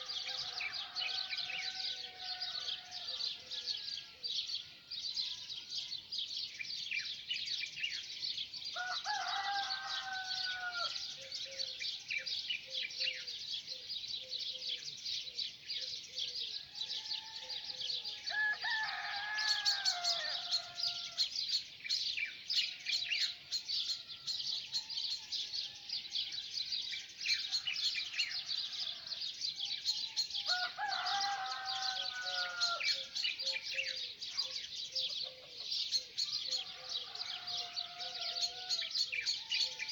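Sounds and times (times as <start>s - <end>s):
rooster crowing: 0.0s - 4.2s, 8.8s - 11.0s, 16.8s - 21.3s, 30.4s - 33.2s, 36.4s - 38.9s
songbirds chirping: 0.0s - 39.9s.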